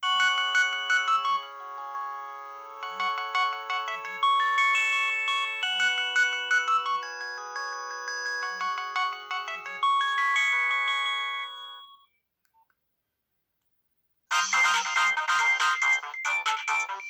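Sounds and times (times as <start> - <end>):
polyphonic ringtone melody: 0.0 - 12.0, 14.3 - 17.0
dense phone ringtone: 14.3 - 17.0.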